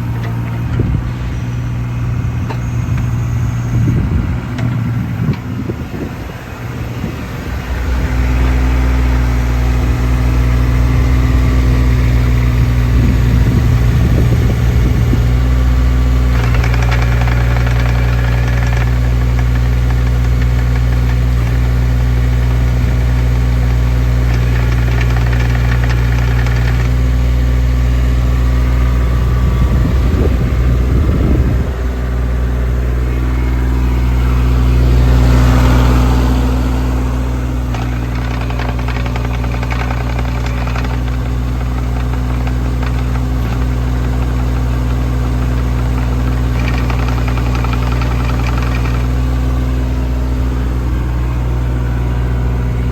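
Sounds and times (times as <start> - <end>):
diesel engine running: 0.0 - 52.9.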